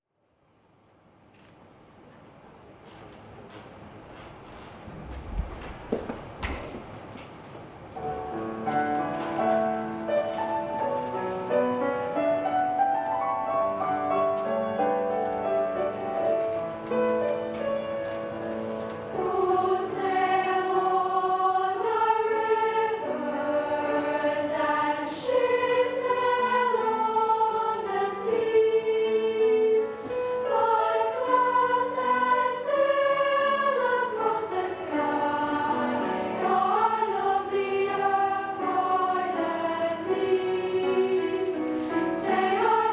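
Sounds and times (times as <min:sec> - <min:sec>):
choir singing in harmony: 0:08.7 - 0:42.9.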